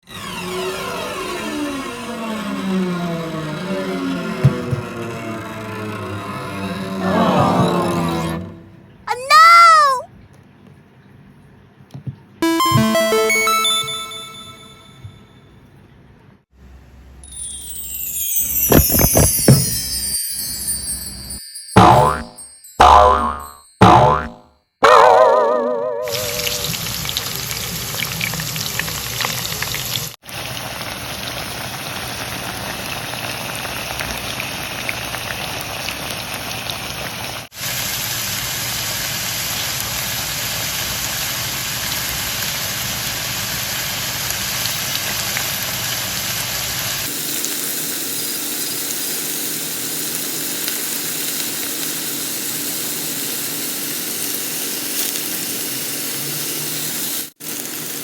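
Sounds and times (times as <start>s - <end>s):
food sizzling in hot oil: 26.2s - 58.0s.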